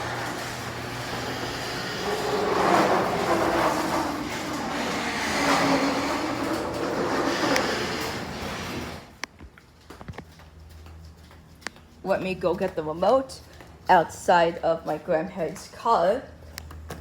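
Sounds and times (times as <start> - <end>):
rollers and hinges squeaking: 0.0 - 9.2
garage door opener rumbling: 0.0 - 9.3.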